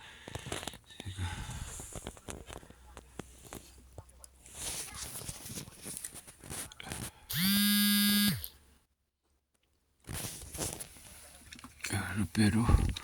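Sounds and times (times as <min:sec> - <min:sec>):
small electric motor buzzing: 0:07.3 - 0:08.5.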